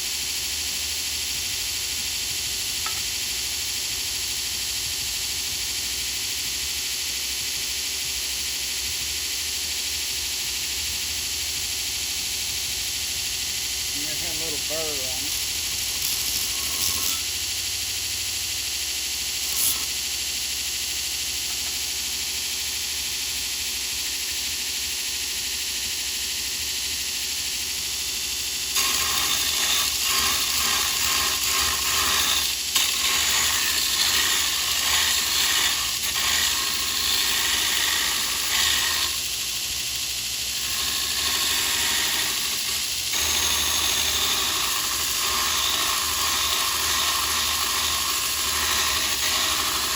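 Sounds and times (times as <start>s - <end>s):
angle grinder grinding steel: 2.4s - 4.9s, 10.0s - 20.2s, 25.4s - 49.9s.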